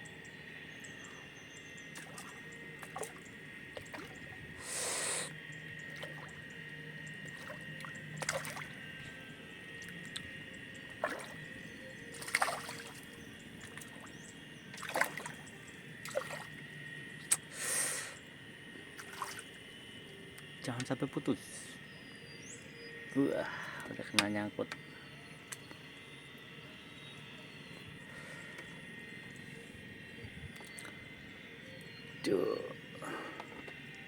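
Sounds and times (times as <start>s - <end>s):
insects droning: 0.0s - 34.0s
water splashing: 7.3s - 8.8s, 11.0s - 11.4s, 12.2s - 14.1s, 14.8s - 15.4s, 16.0s - 16.5s.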